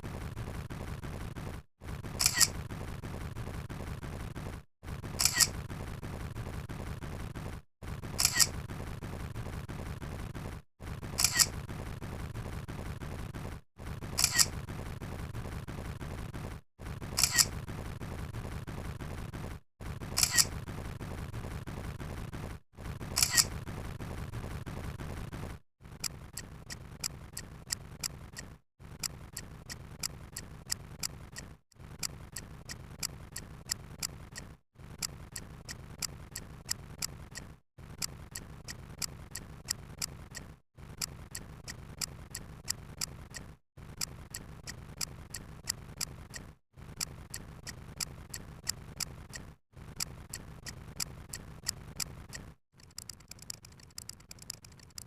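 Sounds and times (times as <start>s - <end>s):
fast clicking ticks: 2.0s - 3.2s, 5.1s - 6.8s, 11.1s - 11.6s, 26.0s - 55.0s.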